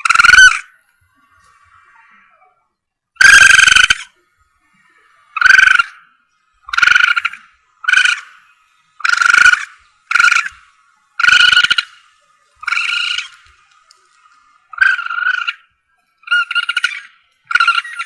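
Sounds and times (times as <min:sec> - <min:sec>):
high harsh animal calls: 0:00.0 - 0:00.8, 0:03.2 - 0:04.2, 0:05.2 - 0:13.6, 0:14.6 - 0:18.0.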